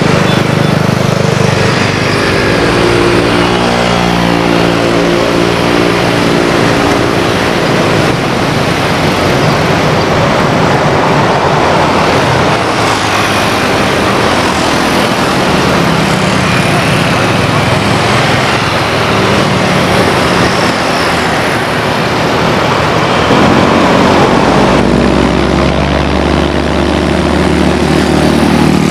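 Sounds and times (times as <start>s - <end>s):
propeller plane flying past: 0.0s - 28.9s
steady rushing noise: 0.0s - 28.9s.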